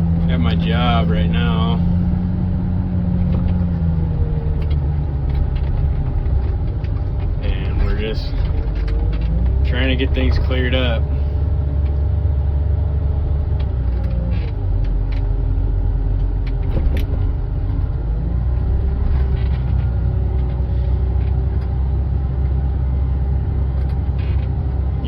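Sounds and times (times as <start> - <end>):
diesel engine running: 0.0 - 25.0.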